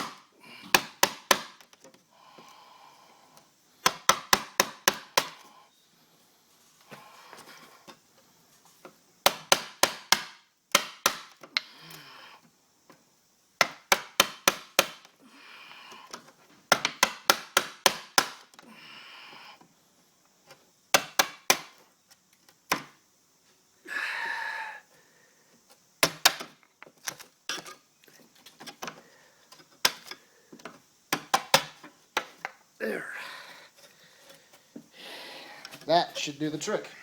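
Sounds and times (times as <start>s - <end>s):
hammer striking chisel into wood: 0.0s - 1.6s, 3.8s - 5.4s, 9.2s - 11.3s, 13.6s - 15.0s, 16.7s - 18.4s.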